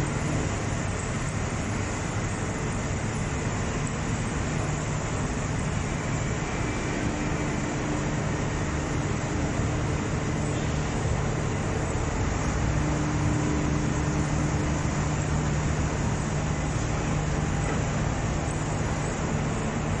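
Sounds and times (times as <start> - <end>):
conveyor running: 0.0 - 20.0.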